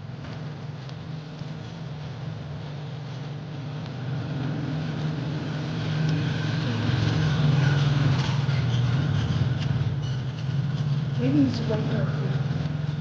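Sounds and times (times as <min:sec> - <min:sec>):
vehicle engine humming: 0:00.0 - 0:13.0.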